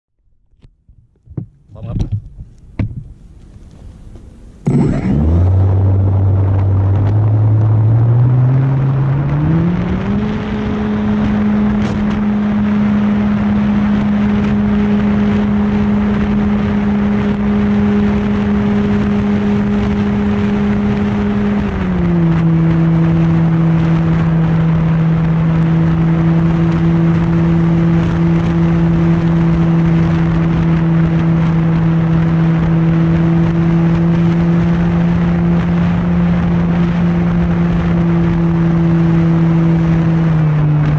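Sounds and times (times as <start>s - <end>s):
rushing noise: 4.5s - 10.3s.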